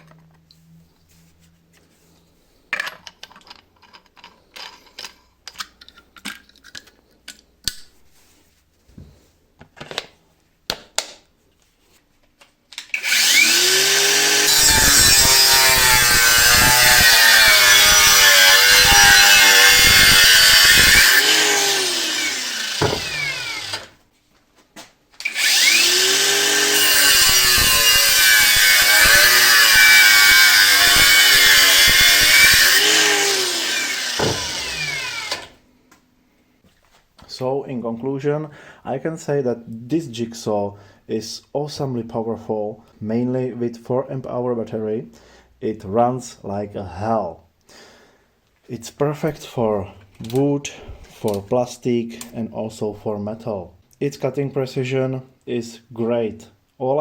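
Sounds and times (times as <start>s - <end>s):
power tool cutting: 12.9s - 24.0s, 25.2s - 35.6s.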